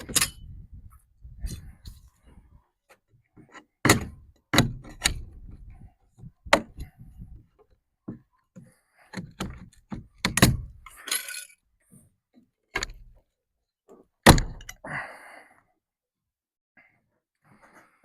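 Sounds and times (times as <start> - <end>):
wooden boards knocking and cracking: 3.8 - 5.6, 9.2 - 10.8
wood rattling: 9.2 - 11.5.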